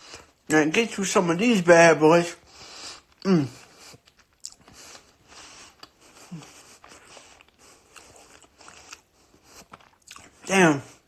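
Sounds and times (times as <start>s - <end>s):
person chewing close to microphone: 2.4s - 11.0s.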